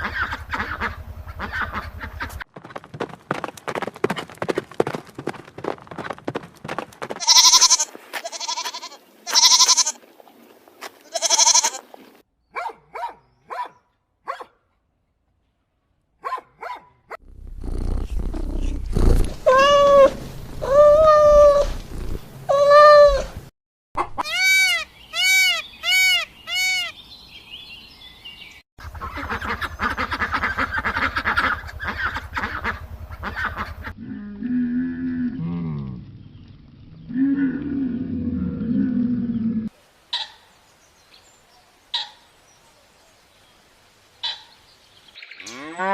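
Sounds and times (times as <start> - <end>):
farm animal calls: 0.0 - 2.4, 7.2 - 10.0, 11.0 - 11.8, 24.0 - 27.0, 28.8 - 34.2, 38.7 - 40.5, 41.9 - 42.3, 44.2 - 44.6
rough noisy sound: 17.2 - 19.5.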